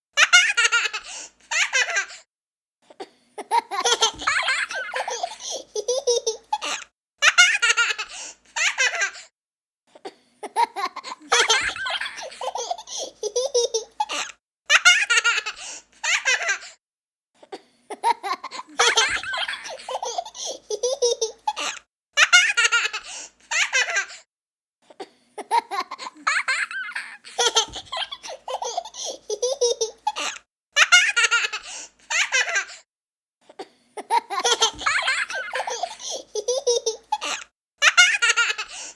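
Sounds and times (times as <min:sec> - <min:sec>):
young child giggling: 0:03.4 - 0:09.2, 0:10.4 - 0:16.6, 0:17.9 - 0:24.1, 0:25.4 - 0:32.7, 0:34.0 - 0:38.8.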